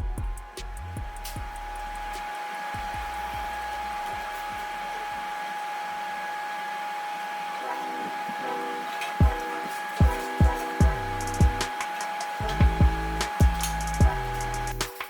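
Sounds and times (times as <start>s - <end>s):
background music with a beat: 0.0s - 5.6s, 9.1s - 15.0s
power tool motor whining: 3.6s - 14.9s.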